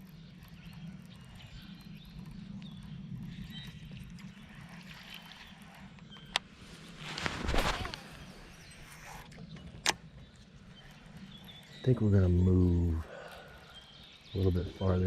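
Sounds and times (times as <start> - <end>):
distant bird chirps: 0.0 - 15.0
steady low hum: 0.0 - 15.0.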